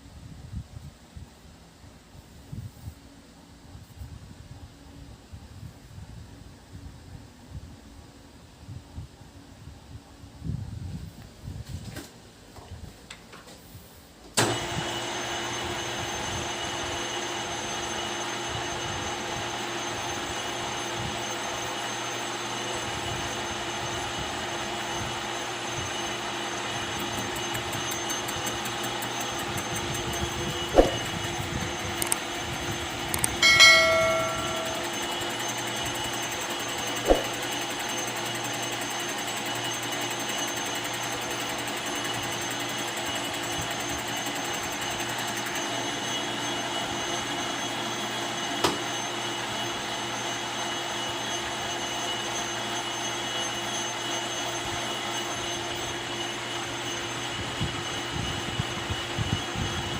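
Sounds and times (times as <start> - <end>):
metal lathe humming: 25.5 - 39.6
sharp metal knocks: 30.8 - 31.1, 33.4 - 35.2
ringing metal clink: 33.2 - 35.4.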